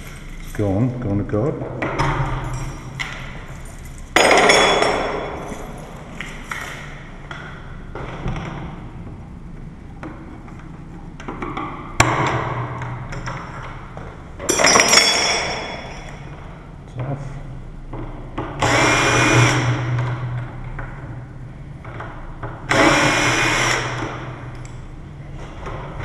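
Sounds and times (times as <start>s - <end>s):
loud metal clank: 4.2s - 5.8s.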